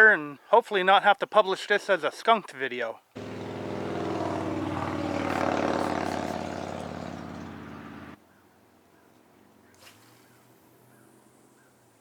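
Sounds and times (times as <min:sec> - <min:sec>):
engine drone: 0:03.2 - 0:08.2.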